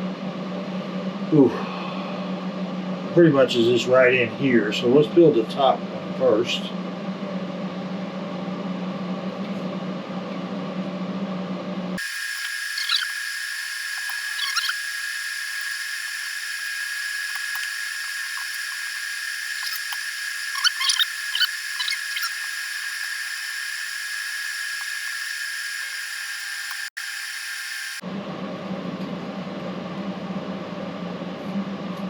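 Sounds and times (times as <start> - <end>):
air conditioner whine and hiss: 0.0 - 12.0.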